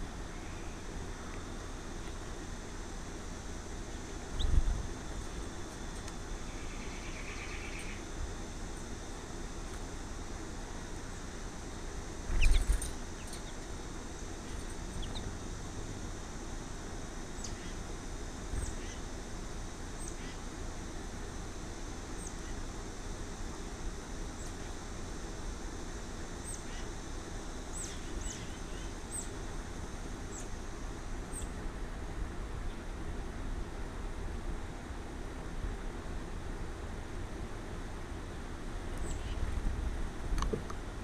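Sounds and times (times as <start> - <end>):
steady hiss: 0.0 - 41.0
small birds chirping: 3.8 - 9.9, 10.7 - 16.1, 17.3 - 19.1, 19.9 - 20.4, 22.1 - 22.7, 26.3 - 27.0, 27.7 - 29.4, 30.2 - 31.6, 38.9 - 39.5.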